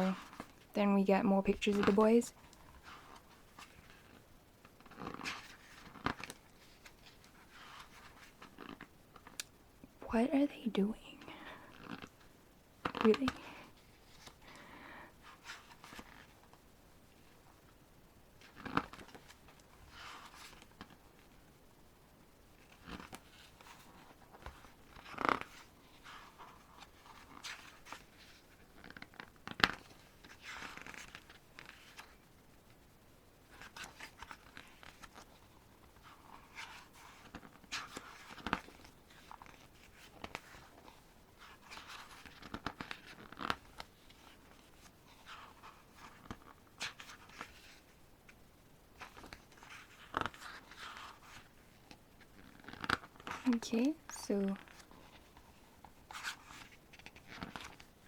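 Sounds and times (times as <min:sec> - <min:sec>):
pages turning: 0:00.1 - 0:00.7, 0:01.5 - 0:09.4, 0:11.7 - 0:14.4, 0:15.2 - 0:16.6, 0:18.4 - 0:21.4, 0:22.6 - 0:32.2, 0:33.5 - 0:48.4, 0:49.0 - 0:53.8, 0:54.4 - 0:58.0
paper rustling: 0:01.5 - 0:09.4, 0:22.6 - 0:32.2, 0:33.5 - 0:48.4, 0:49.0 - 0:58.0.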